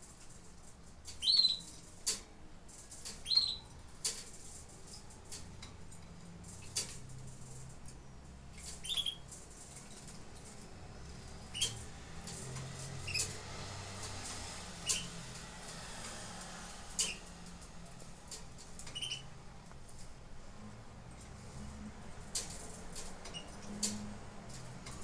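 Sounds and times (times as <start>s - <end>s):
canaries chirping: 1.1s - 2.2s, 2.8s - 5.4s, 7.9s - 20.1s, 22.2s - 25.0s.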